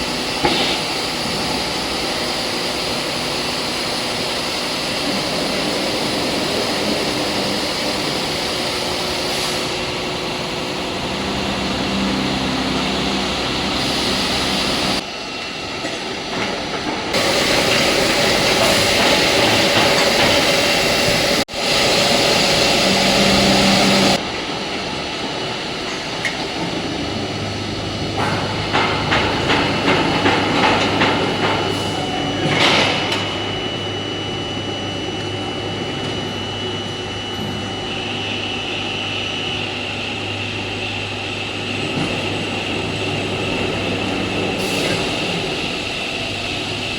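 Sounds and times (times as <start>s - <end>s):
low hum: 9.3s - 15.0s.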